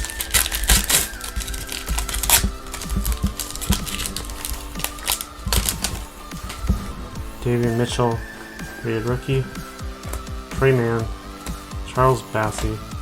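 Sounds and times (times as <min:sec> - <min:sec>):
trading cards clicking and snapping: 0:00.0 - 0:06.9
background music: 0:00.0 - 0:13.0.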